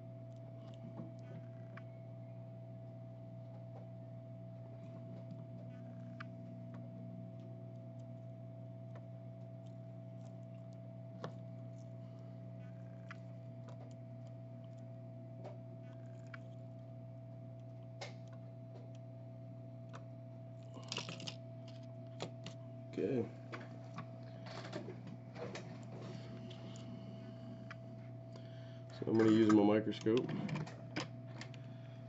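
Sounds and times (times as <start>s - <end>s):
electrical hum: 0.0s - 32.0s
soldering tools clicking and tapping: 29.0s - 31.6s.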